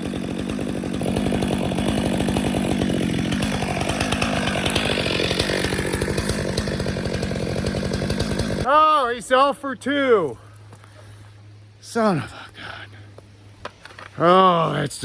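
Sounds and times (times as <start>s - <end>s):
chainsaw cutting wood: 0.0s - 8.7s.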